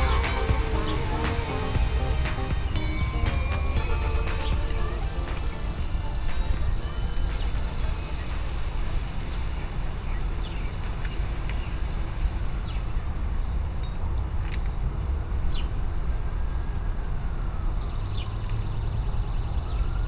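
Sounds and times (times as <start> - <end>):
bird chirps: 0.0 - 8.6.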